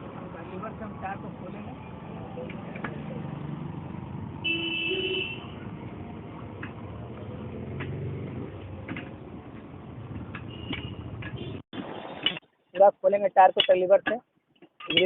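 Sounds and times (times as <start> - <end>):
street traffic: 0.0 - 15.0
vehicle horn: 4.4 - 5.5.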